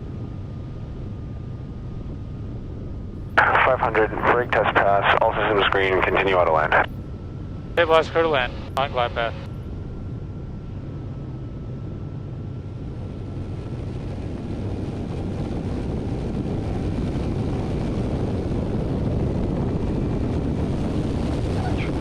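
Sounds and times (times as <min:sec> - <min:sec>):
turboprop engine rumble: 0:02.6 - 0:22.0
wind rush: 0:12.6 - 0:22.0.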